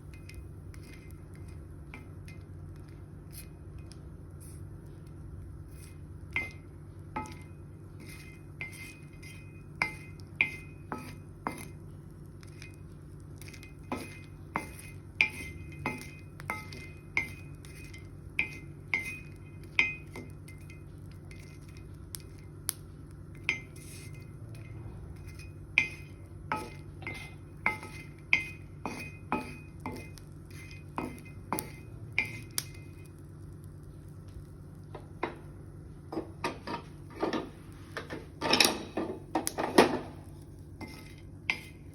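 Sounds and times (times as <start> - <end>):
steady low hum: 0.0 - 41.9
metal spoon clinking against dish: 23.3 - 33.0.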